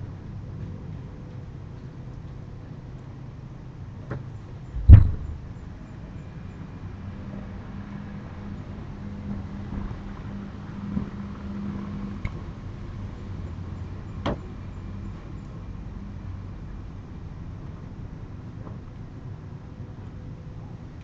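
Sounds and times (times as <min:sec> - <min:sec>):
steady low hum: 0:00.0 - 0:21.0
deep heavy bang: 0:04.8 - 0:05.5.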